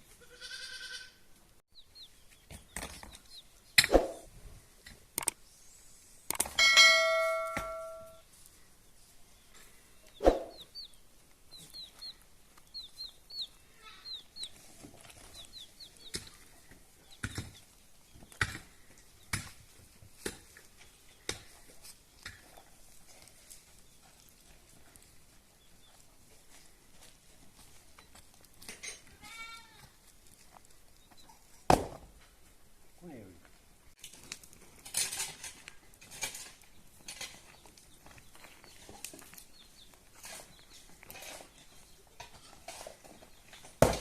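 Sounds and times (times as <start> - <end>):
goat bleat: 0.1 - 1.2, 29.1 - 29.9
sharp knocks: 6.6 - 8.1.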